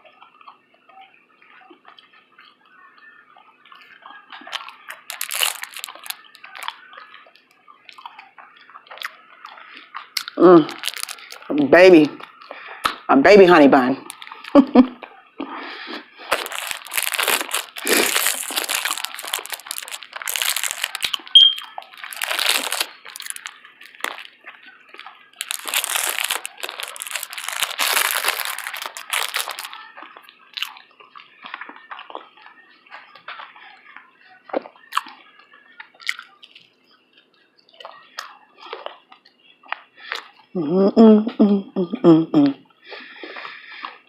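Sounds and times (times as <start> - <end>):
chewing mouth clicks: 0.0 - 2.6, 3.4 - 11.5, 14.1 - 14.6, 35.8 - 40.4
crunching bun: 1.4 - 11.6, 16.0 - 33.6, 34.4 - 36.8.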